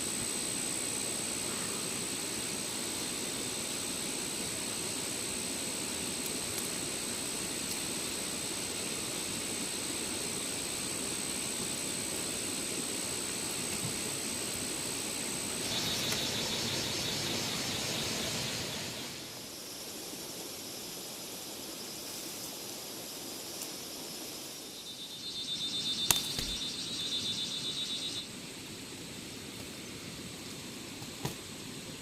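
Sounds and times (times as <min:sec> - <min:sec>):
high-pitched pulsing trills: 0:15.6 - 0:19.3, 0:24.5 - 0:28.3
sharp click: 0:26.0 - 0:26.6.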